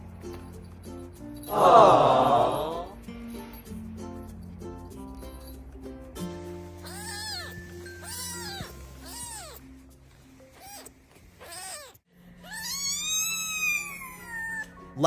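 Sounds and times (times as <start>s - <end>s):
background music: 0.0s - 11.4s, 13.6s - 15.0s
kitten meowing: 6.8s - 9.7s, 10.6s - 14.8s.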